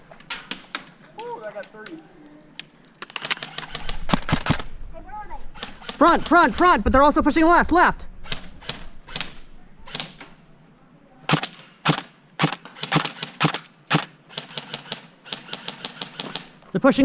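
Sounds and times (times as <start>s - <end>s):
airsoft guns firing: 3.1s - 4.7s, 5.6s - 6.8s, 11.3s - 16.6s.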